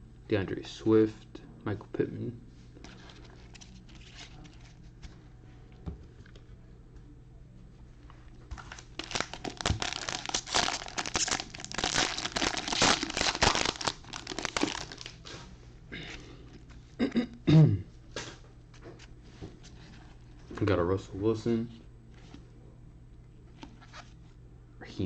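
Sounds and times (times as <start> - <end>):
wrapper crinkling: 2.8 - 4.9, 8.5 - 15.4.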